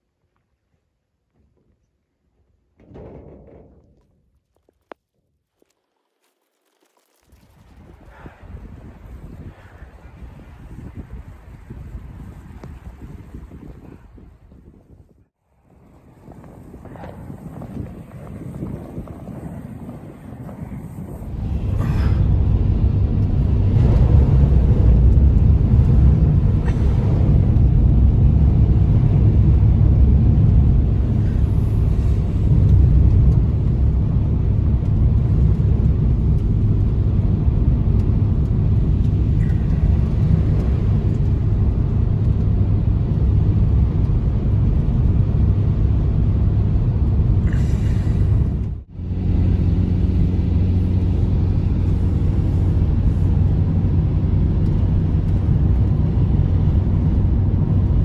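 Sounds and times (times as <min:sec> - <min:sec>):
motor vehicle rumbling: 0:15.7 - 0:58.0.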